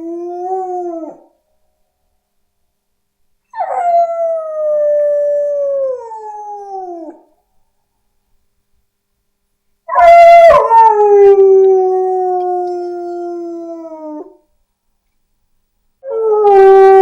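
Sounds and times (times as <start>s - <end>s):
dog howling: 9.9s - 14.4s.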